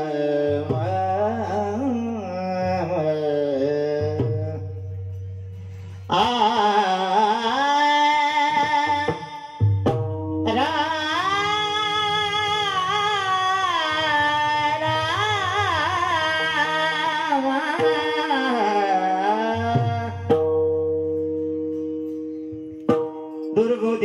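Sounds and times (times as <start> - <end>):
man singing ornamented line: 0.0 - 5.2, 6.0 - 20.5, 23.3 - 24.0.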